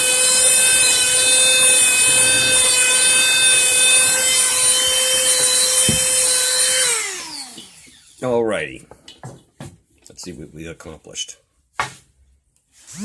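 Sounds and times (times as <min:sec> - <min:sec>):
rotary carving tool whining: 0:00.0 - 0:08.2.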